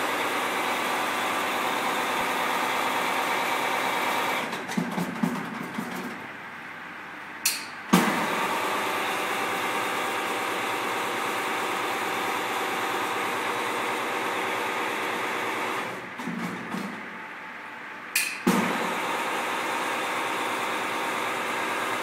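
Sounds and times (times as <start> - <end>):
sharp click: 7.4 - 7.8, 18.2 - 18.5
machine whirring: 18.2 - 22.0.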